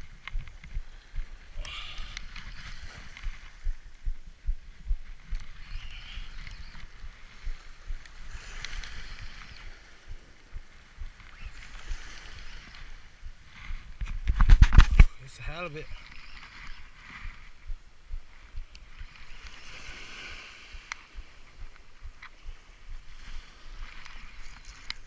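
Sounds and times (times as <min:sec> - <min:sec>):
wind buffeting microphone: 0:00.0 - 0:15.3.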